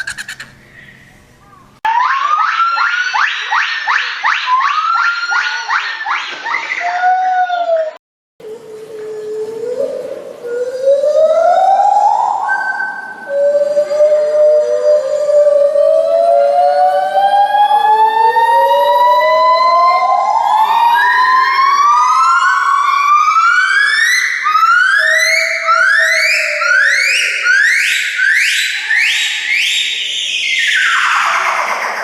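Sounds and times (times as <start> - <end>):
monkey whooping calls: 0.0 - 1.0, 19.9 - 32.0.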